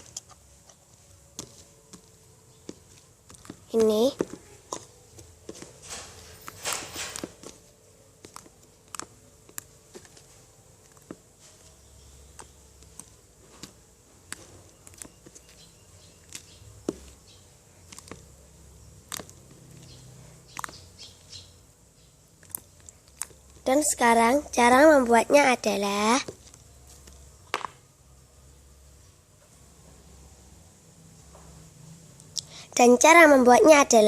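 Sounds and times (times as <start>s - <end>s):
slime squeezed with sticky pops: 19.0s - 21.1s.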